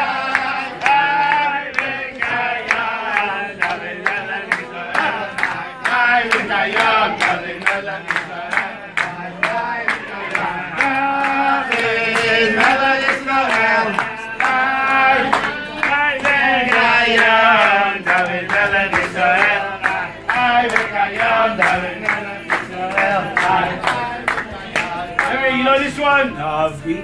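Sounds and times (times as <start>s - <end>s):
group of voices singing: 0.0s - 27.0s
hands clapping a beat: 0.0s - 27.0s.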